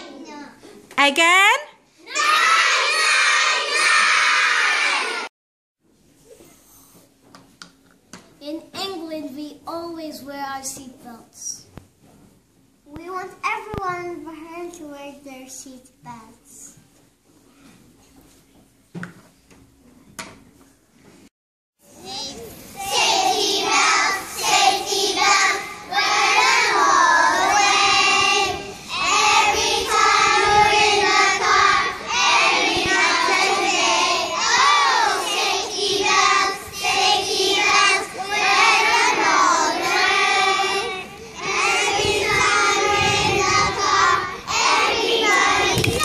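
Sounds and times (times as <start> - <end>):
young children singing: 22.8 - 46.0.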